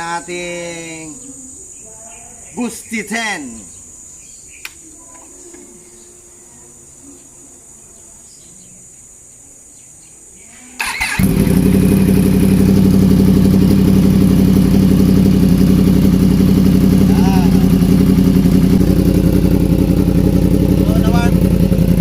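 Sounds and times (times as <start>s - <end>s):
faint bird chirps: 0.7s - 10.8s
motorcycle engine starting and idling: 10.8s - 22.0s.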